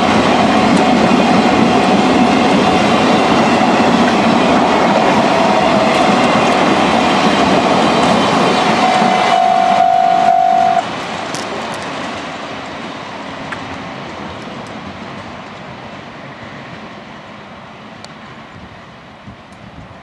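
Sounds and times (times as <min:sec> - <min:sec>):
freight train rolling past: 0:00.0 - 0:20.0
steady tone: 0:04.6 - 0:10.9.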